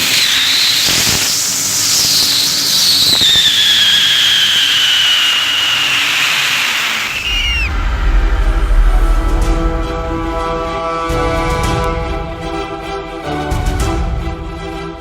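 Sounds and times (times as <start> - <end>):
rushing air: 0.0 - 10.6
music: 7.3 - 15.0.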